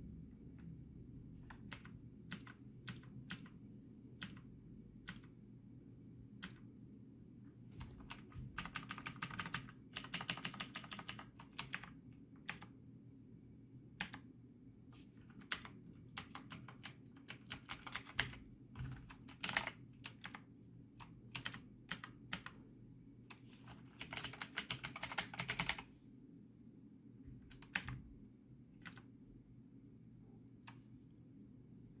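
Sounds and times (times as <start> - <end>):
steady low hum: 0.0 - 32.0
clicky keyboard typing: 1.4 - 3.6, 4.2 - 5.4, 6.4 - 6.7, 7.8 - 12.8, 14.0 - 14.3, 15.2 - 22.6, 23.3 - 25.9, 27.4 - 28.0, 28.8 - 29.1, 30.6 - 30.9.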